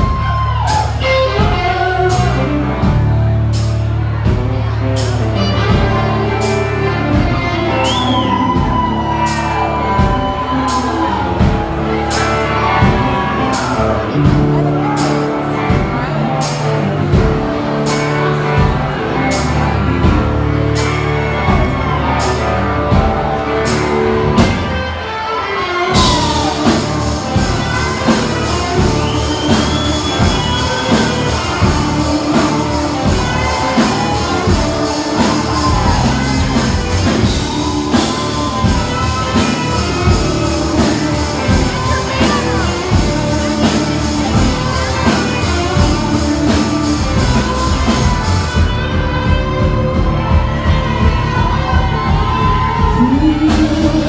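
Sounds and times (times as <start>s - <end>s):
live rock band playing: 0.0s - 54.0s
lead singer singing: 50.2s - 54.0s.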